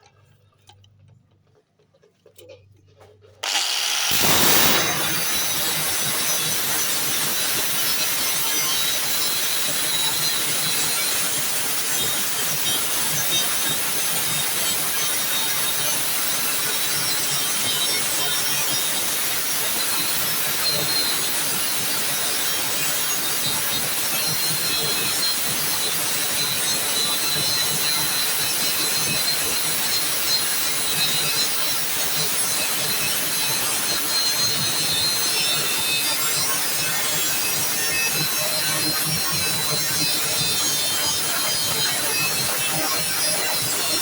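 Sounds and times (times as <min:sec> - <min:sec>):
angle grinder grinding metal: 0:03.4 - 0:12.1.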